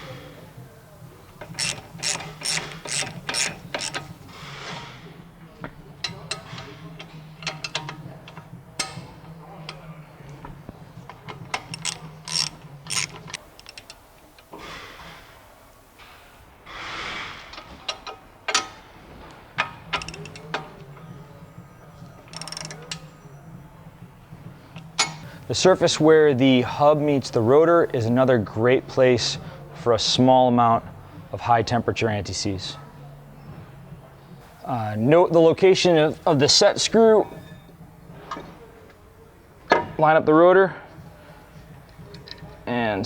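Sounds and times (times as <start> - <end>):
ratchet wrench clicking: 1.4 - 4.2, 11.2 - 14.5, 20.0 - 20.6, 22.3 - 23.1.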